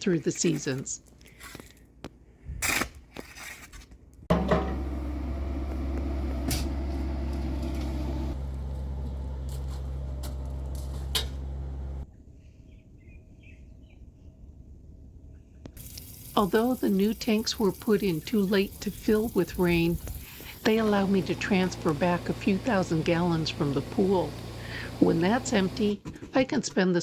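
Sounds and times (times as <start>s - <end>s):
low-pitched motor running: 4.3s - 12.1s, 15.8s - 26.0s.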